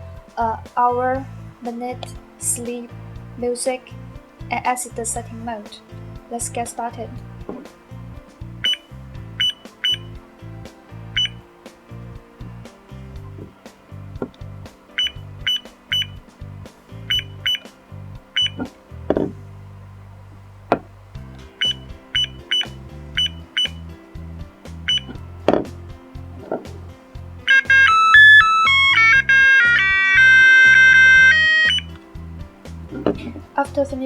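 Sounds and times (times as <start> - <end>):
electronic beeping alarm melody: 8.6 - 10.1, 11.2 - 11.4, 15.0 - 16.2, 18.4 - 18.6, 21.6 - 23.8, 24.9 - 25.2, 27.5 - 31.9
alarm clock button beeps: 27.5 - 31.9.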